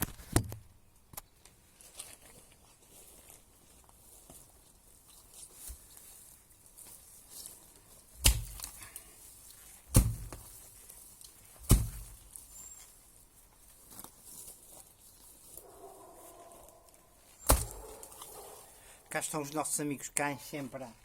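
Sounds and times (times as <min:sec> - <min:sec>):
digging tool striking ground: 0:08.1 - 0:10.8, 0:11.4 - 0:12.8, 0:17.4 - 0:18.4.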